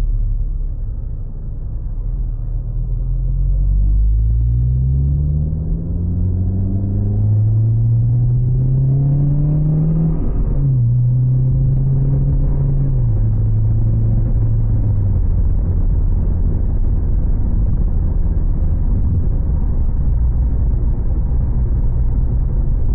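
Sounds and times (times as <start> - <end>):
car exhaust accelerating: 0.0 - 22.9.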